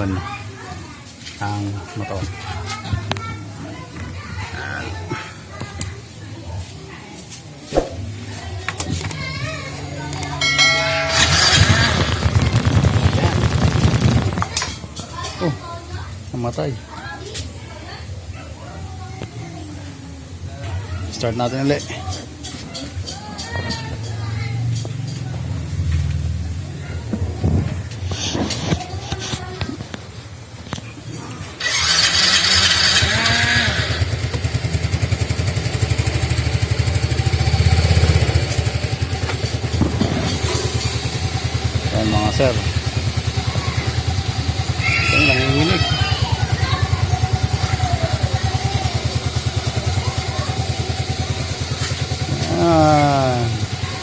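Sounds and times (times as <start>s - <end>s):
scooter engine starting and running: 9.9s - 14.8s, 31.6s - 54.0s
brief ringing tone: 10.4s - 12.6s.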